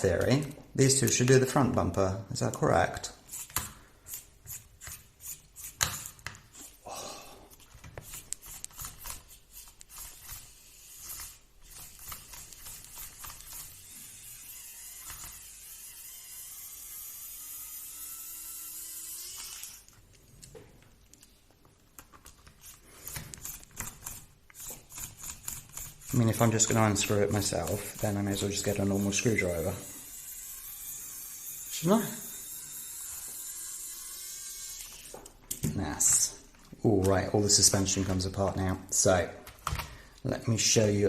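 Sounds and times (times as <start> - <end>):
electric screwdriver whirring: 8.0 - 19.9, 22.6 - 35.3.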